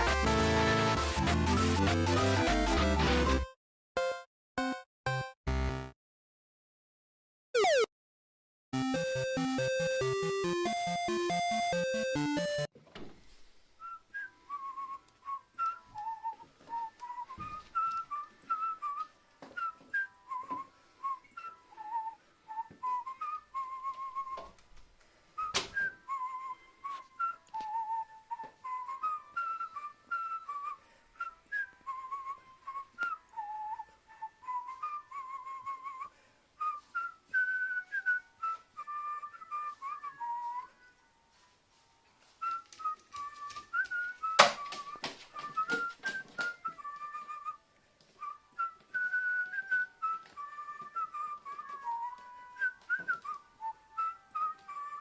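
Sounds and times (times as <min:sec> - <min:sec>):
whistled tune: 0:09.0 - 0:12.7, 0:13.8 - 0:24.6, 0:25.4 - 0:41.5, 0:42.2 - 0:55.0.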